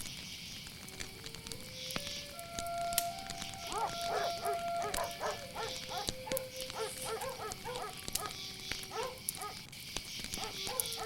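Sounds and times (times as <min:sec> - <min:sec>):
crickets chirring: 0:00.0 - 0:11.0
sharp crackles: 0:00.0 - 0:11.0
dogs barking rapidly: 0:03.7 - 0:09.6, 0:10.3 - 0:11.0.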